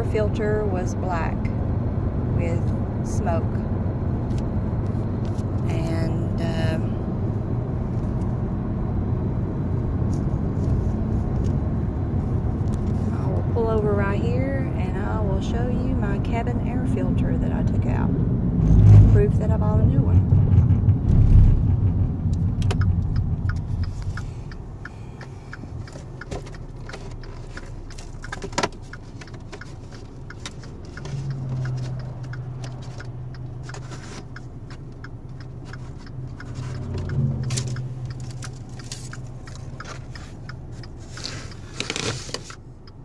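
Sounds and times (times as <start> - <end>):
rustling inside car: 9.9 - 16.4, 18.8 - 43.0
car engine idling: 19.2 - 43.0.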